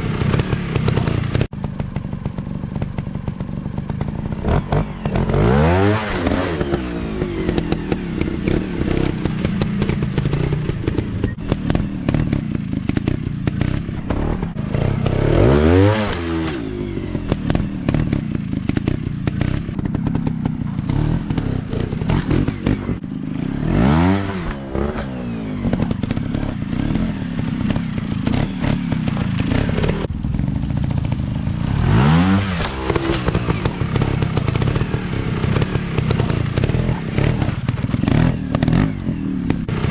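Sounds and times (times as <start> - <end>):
dirt bike engine revving: 0.0 - 39.9
knocks and clatter: 6.1 - 23.0, 24.2 - 31.2, 32.4 - 39.9.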